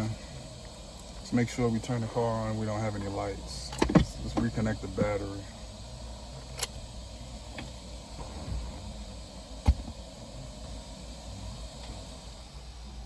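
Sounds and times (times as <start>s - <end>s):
low steady hiss: 0.0s - 13.0s.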